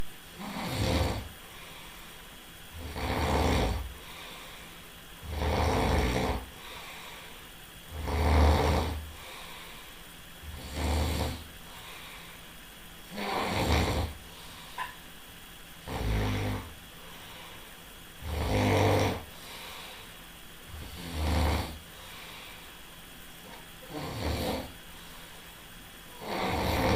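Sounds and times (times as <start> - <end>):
quiet breathing: 0.3 - 26.9
loud rasping snoring: 0.4 - 1.4, 2.7 - 4.4, 5.2 - 7.0, 7.9 - 9.5, 10.4 - 11.5, 13.1 - 14.9, 15.8 - 16.8, 18.2 - 19.9, 20.7 - 22.3, 23.4 - 24.8, 26.1 - 26.9.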